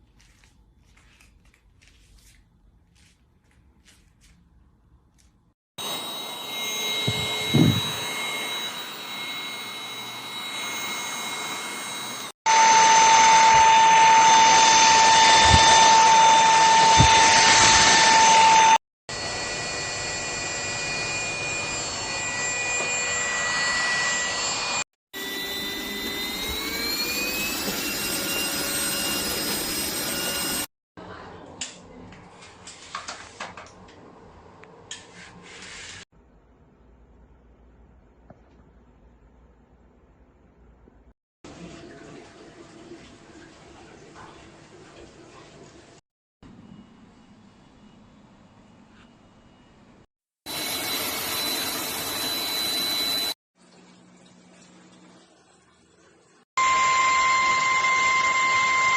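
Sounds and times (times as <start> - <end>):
vacuum cleaner motor whining: 5.8 - 30.7, 50.5 - 53.4, 56.6 - 58.9.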